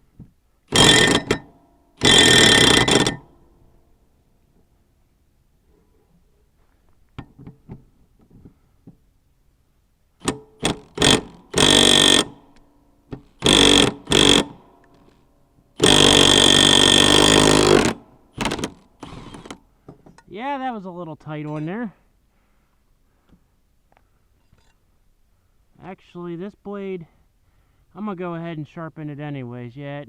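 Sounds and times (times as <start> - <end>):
impact wrench hammering: 0.7 - 3.4, 10.2 - 15.2, 15.8 - 20.3.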